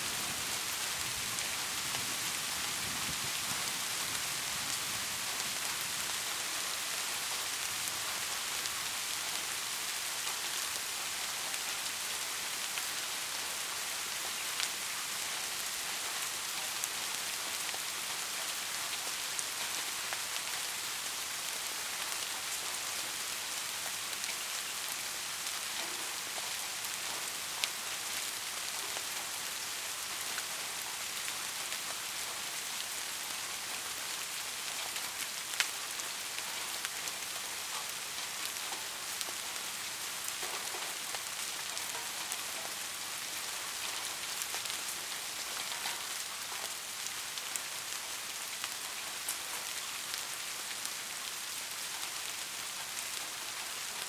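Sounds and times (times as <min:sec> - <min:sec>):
steady rainfall: 0:00.0 - 0:54.0.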